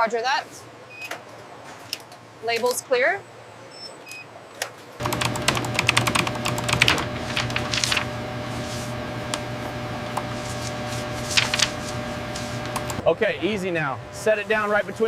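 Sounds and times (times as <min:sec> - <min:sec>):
rapid mechanical clicking: 0:05.0 - 0:08.0
machine humming: 0:05.0 - 0:15.0.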